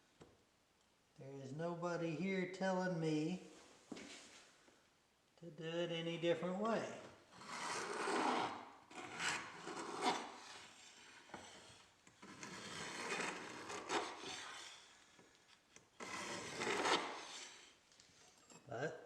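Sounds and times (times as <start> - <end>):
hand tool scratching steel: 7.4 - 15.1, 16.0 - 17.8.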